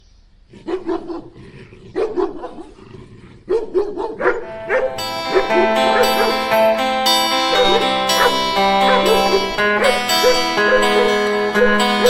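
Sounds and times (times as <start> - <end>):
dog barking: 0.6 - 2.8, 3.4 - 6.4, 7.5 - 11.1
instrumental music: 4.4 - 12.0.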